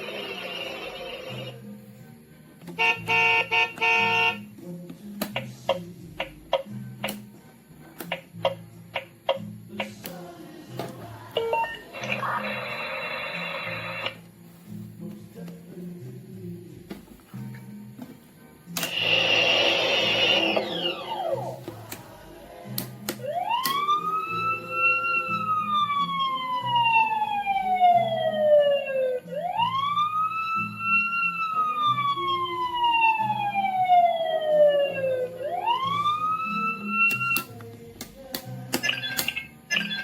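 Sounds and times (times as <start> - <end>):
simple electronic tune: 11.4 - 14.2, 18.9 - 21.6
electronic toy siren wailing: 18.9 - 21.5, 23.2 - 37.5, 38.9 - 40.0
plastic switch clicks: 37.1 - 39.4.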